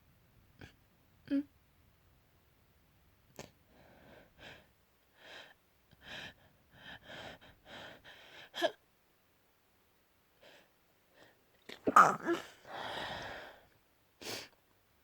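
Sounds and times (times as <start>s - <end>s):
person sneezing: 11.7s - 12.6s
breathy gasping inhales: 12.3s - 13.7s.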